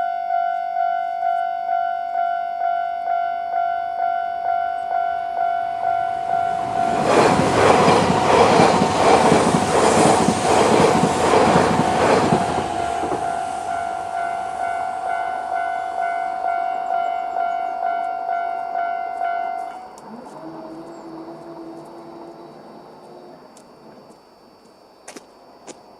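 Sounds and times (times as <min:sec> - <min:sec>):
crossing warning bell ringing: 0:00.0 - 0:20.2
train wheels clacking: 0:06.1 - 0:20.0.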